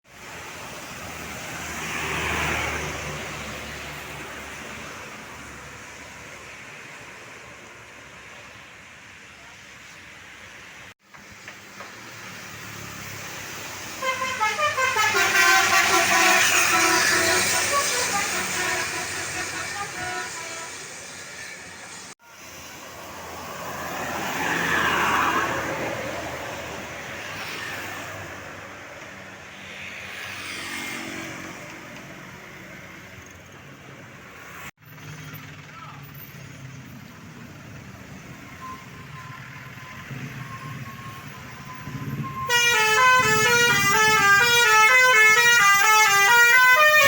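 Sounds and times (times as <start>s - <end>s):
tyres hissing on wet road: 15.0s - 28.4s.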